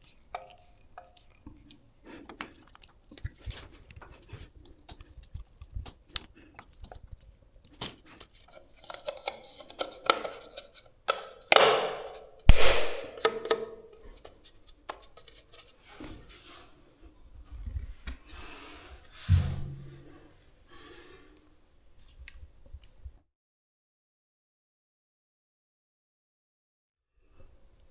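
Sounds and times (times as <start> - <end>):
low thump: 19.3 - 20.1.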